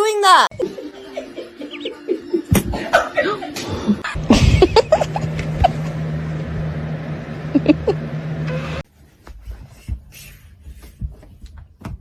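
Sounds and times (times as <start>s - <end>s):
machine hum with low drone: 3.6s - 8.8s.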